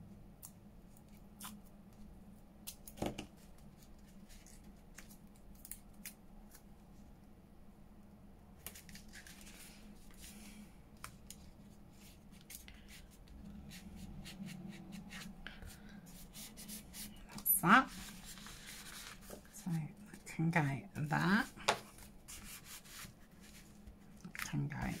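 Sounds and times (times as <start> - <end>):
paper rustling: 8.6 - 12.9, 17.0 - 19.6.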